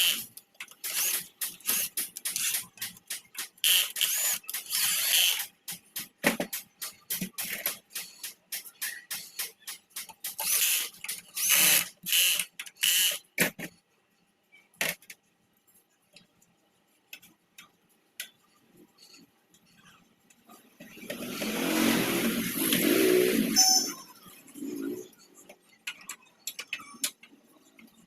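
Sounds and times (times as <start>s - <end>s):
sharp scraping bursts: 0.0s - 13.7s, 20.9s - 25.4s.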